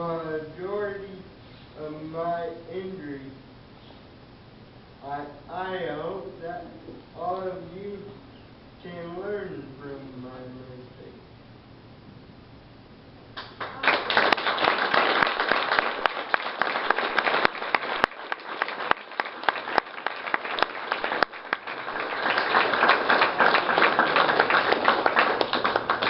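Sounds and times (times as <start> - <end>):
audience applauding: 13.4 - 26.0.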